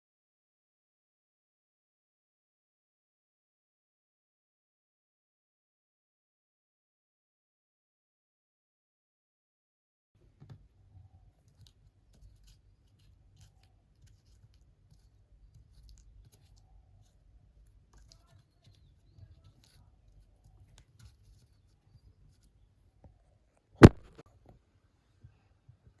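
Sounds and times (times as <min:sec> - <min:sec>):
faint snips and scratches of tools: 0:11.3 - 0:24.0
sharp loud knock: 0:23.8 - 0:24.2.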